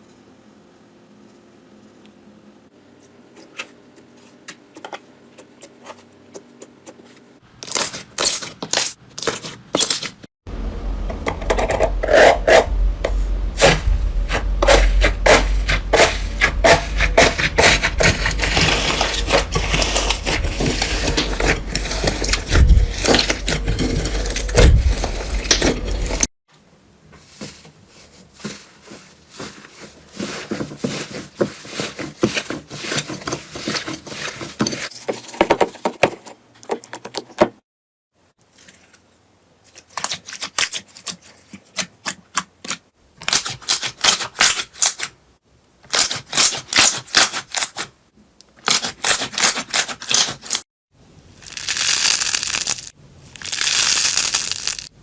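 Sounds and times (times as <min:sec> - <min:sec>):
steady low hum: 0:10.5 - 0:26.3.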